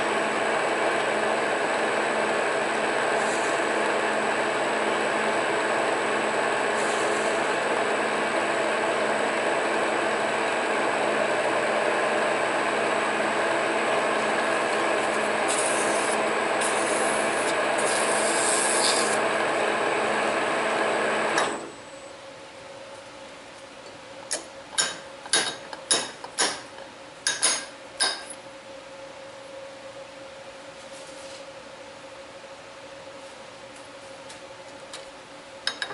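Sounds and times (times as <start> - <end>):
metal lathe humming: 0.0 - 21.4
scratchy cutting hisses: 15.5 - 19.2.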